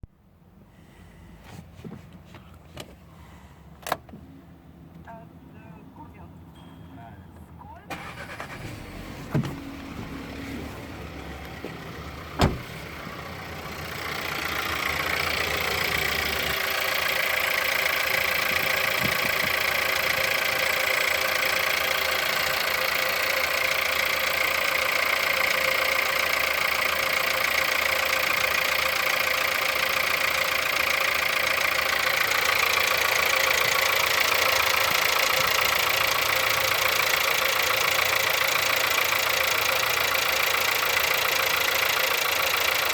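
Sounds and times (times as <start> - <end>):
car engine idling: 0.2 - 6.1, 7.7 - 42.9
fast engine knocking: 14.0 - 42.9.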